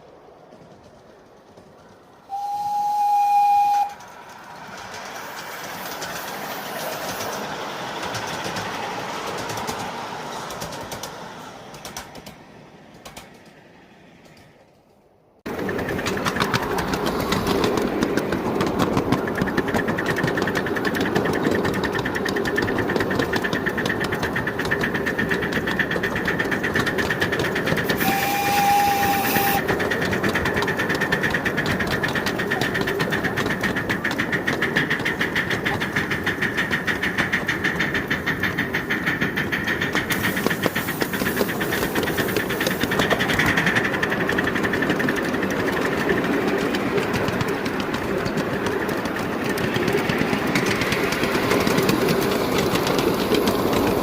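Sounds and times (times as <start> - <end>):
wheel clatter on track: 0.0 - 54.0
steam locomotive exhaust beat: 2.2 - 12.4, 15.5 - 54.0
steam hiss: 22.4 - 29.9, 33.4 - 45.4.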